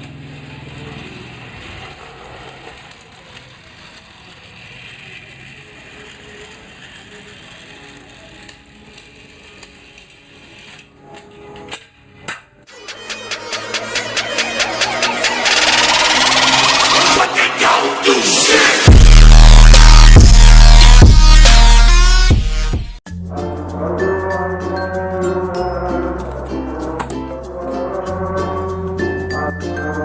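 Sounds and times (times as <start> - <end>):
toy train motor whirring: 0.0 - 11.3
gears and wheels rattling: 0.0 - 12.1
music with a regular beat: 12.7 - 26.6.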